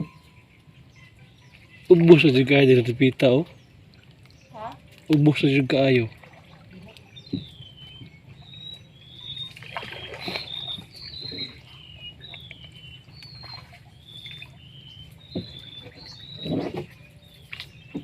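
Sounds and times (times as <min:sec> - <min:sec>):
bird whistling song: 0:00.0 - 0:02.0, 0:06.9 - 0:18.0.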